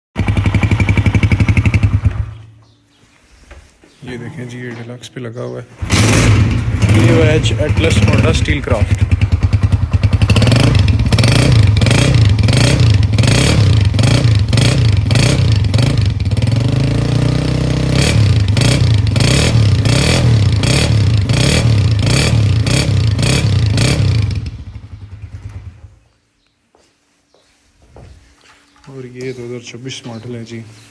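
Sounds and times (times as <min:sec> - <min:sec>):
motorcycle engine revving: 0:00.2 - 0:02.5, 0:05.8 - 0:26.1.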